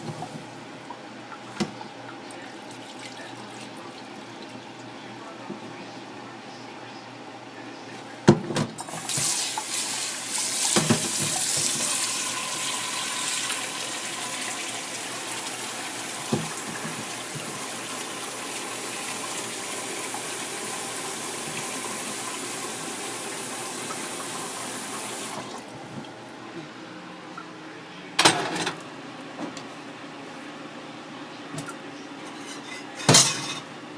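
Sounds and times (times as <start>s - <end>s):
water running from a tap: 8.9s - 25.6s.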